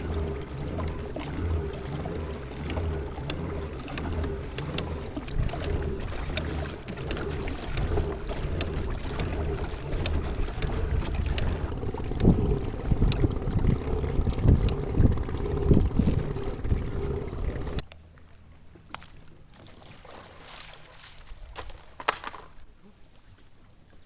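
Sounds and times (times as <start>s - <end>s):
small ticks and splashes: 0.0s - 17.8s, 18.9s - 22.3s
wind rumbling on microphone: 0.0s - 17.8s.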